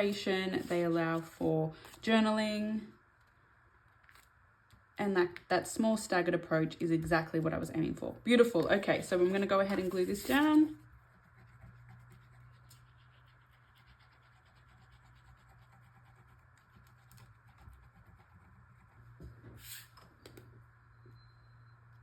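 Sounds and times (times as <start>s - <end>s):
paper scratching and rubbing: 0.0s - 2.0s, 9.1s - 19.9s
low steady hum: 0.0s - 22.0s.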